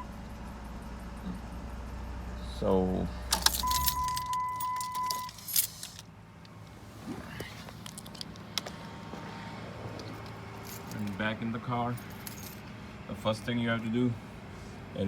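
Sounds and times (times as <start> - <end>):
car engine hum: 0.0 - 15.0
keys jangling: 3.3 - 6.0, 10.0 - 11.2, 12.0 - 12.7.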